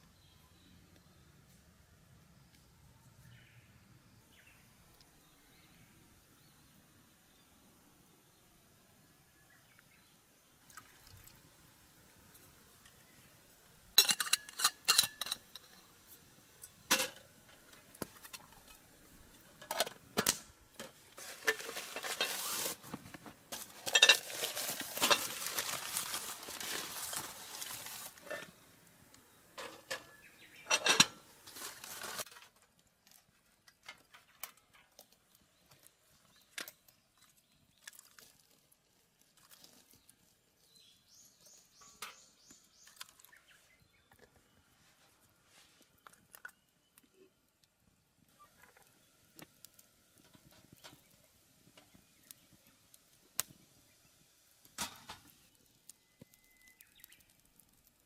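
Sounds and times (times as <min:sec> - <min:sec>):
cookware and utensils clinking: 0:13.9 - 0:16.0, 0:16.6 - 0:22.8, 0:23.5 - 0:28.5, 0:29.6 - 0:32.2.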